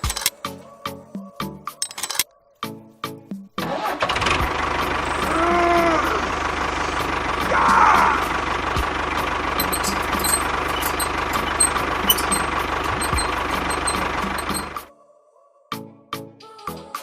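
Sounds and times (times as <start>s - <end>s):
small engine running: 3.6s - 14.9s.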